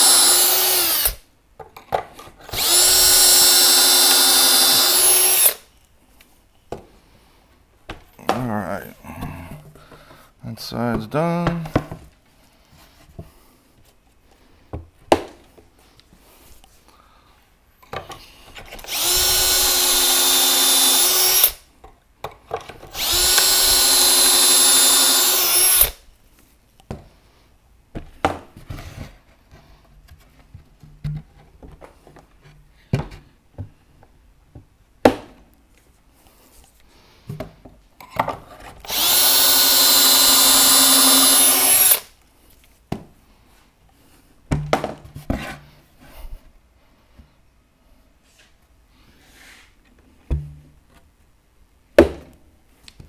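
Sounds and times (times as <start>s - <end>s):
drill boring into plywood: 0.0s - 1.2s, 2.4s - 5.6s, 18.8s - 21.6s, 22.9s - 26.0s, 38.8s - 42.1s.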